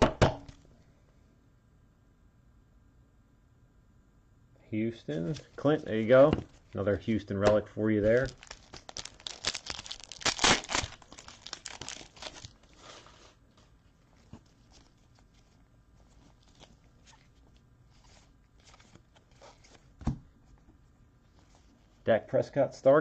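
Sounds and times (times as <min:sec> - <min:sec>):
cards rustling and clicking: 0:05.1 - 0:21.9
foil wrapper tearing and crinkling: 0:08.0 - 0:19.9.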